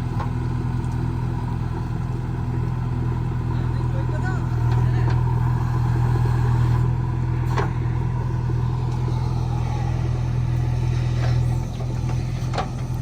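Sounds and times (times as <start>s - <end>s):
diesel engine running: 0.0s - 13.0s.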